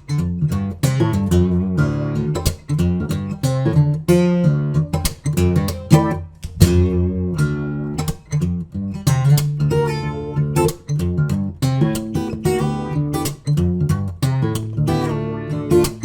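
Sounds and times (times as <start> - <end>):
guitar strumming and picking: 0.0 - 16.0.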